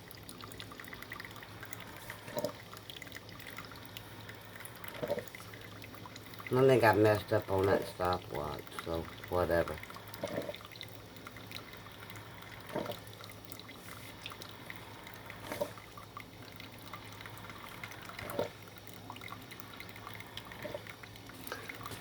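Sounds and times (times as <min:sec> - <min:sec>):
coffee trickling into cup: 0:00.0 - 0:22.0
low steady hum: 0:00.0 - 0:22.0
short gurgles: 0:01.7 - 0:02.7, 0:04.7 - 0:05.4, 0:09.8 - 0:10.7, 0:12.4 - 0:13.1, 0:13.7 - 0:16.0, 0:17.4 - 0:18.7.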